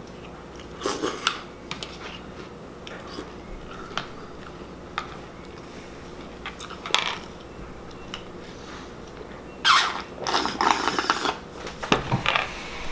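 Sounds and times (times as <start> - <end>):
crackly crunching of cereal: 0.2 - 7.5.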